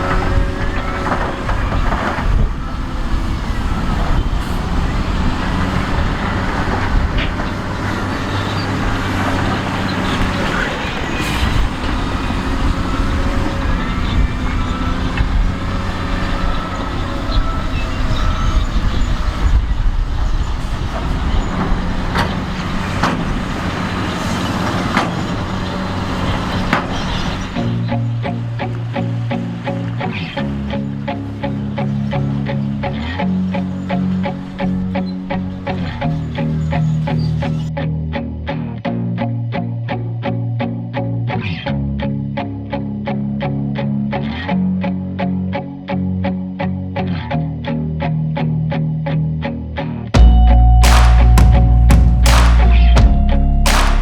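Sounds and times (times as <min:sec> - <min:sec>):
diesel machinery engine running: 0:00.0 - 0:37.7.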